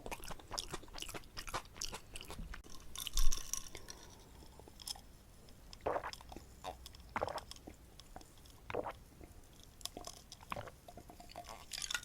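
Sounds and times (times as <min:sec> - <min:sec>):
close chewing of noodles: 0:00.0 - 0:03.2.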